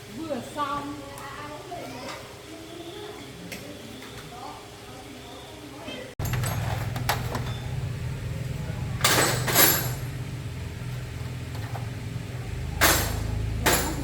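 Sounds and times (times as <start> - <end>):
motorcycle engine idling: 6.2 - 14.0.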